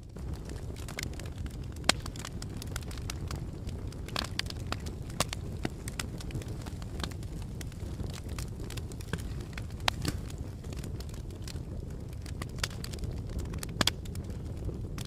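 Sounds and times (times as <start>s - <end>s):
low rumble of flames: 0.0s - 15.0s
wood crackling and popping: 0.0s - 15.0s.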